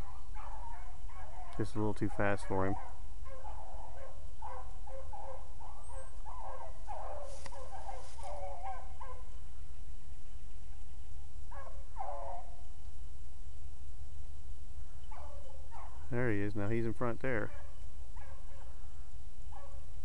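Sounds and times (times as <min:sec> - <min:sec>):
hounds baying: 0:00.0 - 0:09.4, 0:11.5 - 0:12.7, 0:15.0 - 0:16.4, 0:17.4 - 0:18.9, 0:19.5 - 0:19.9.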